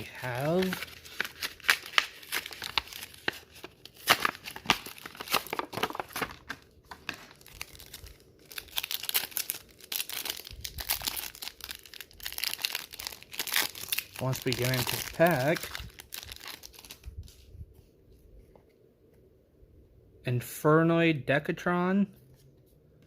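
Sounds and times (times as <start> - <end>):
foil pack tearing and crinkling: 0.0 - 17.0.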